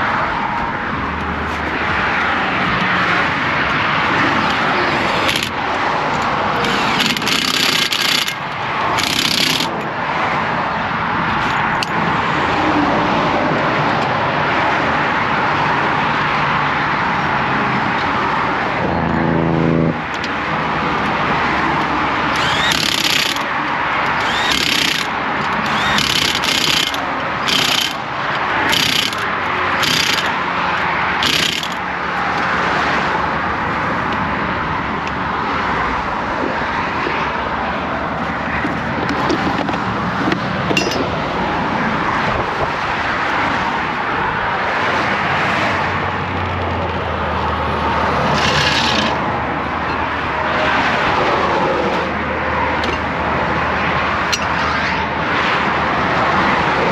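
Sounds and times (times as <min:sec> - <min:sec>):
highway traffic rushing past: 0:00.0 - 0:56.9
impact wrench bursts: 0:05.2 - 0:05.6, 0:06.6 - 0:09.8, 0:22.3 - 0:30.4, 0:31.1 - 0:31.9, 0:48.3 - 0:49.3.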